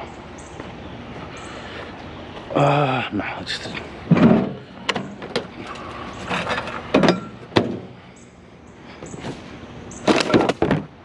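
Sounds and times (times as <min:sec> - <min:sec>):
scrap metal knocks and clatter: 0:04.1 - 0:07.9.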